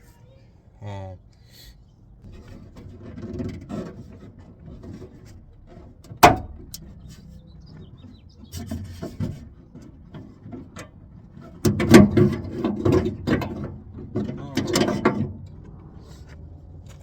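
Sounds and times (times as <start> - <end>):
knocking and rattling: 2.2 - 15.8.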